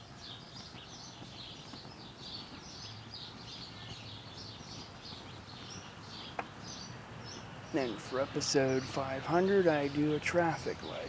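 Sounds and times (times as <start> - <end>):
birds chirping: 0.0 - 11.0.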